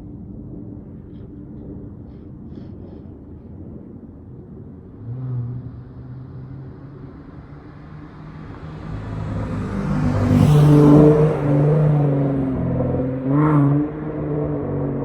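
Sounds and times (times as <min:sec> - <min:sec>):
car engine rumbling and revving: 0:04.5 - 0:15.0.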